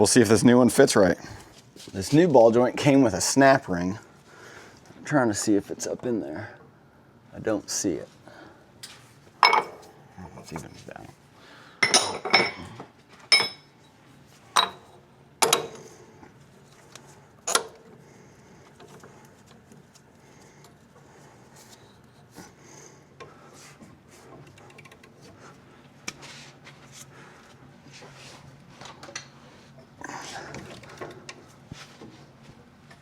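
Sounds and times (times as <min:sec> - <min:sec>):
metal tools clanking: 0:11.8 - 0:12.7.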